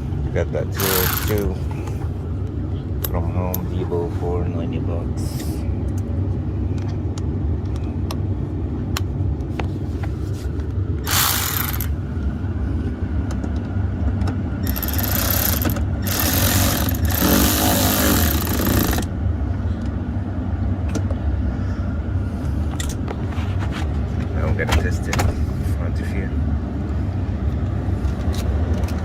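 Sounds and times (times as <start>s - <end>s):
cordless power tool whirring: 11.0s - 11.9s, 14.6s - 19.1s.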